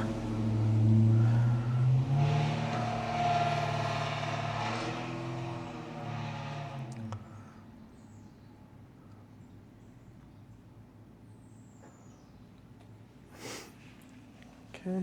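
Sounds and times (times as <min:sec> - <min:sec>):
car engine running: 0:00.0 - 0:07.5.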